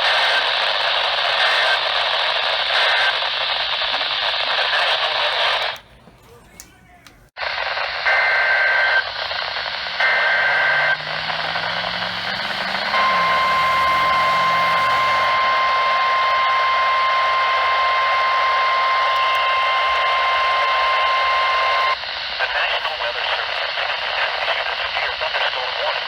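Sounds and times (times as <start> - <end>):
radio static: 0.0 - 26.0
single-pitch warning alarm tone: 8.0 - 22.0
buzzing digital data bursts: 9.7 - 15.8.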